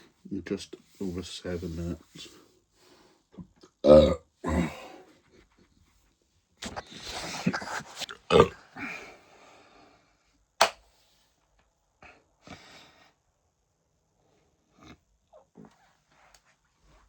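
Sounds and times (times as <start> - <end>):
man burping: 3.7 - 4.9, 7.5 - 9.0.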